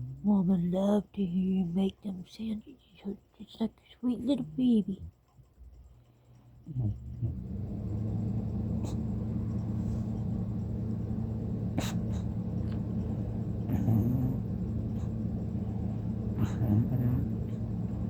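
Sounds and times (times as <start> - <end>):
snoring: 6.7 - 7.7, 13.7 - 14.6, 16.4 - 17.6.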